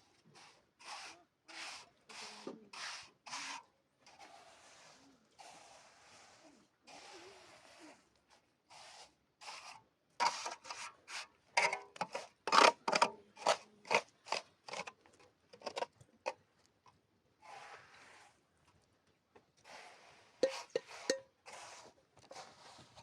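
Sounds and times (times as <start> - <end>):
scraping strokes: 0.3 - 8.1, 8.7 - 14.9, 17.4 - 18.4, 19.6 - 23.0.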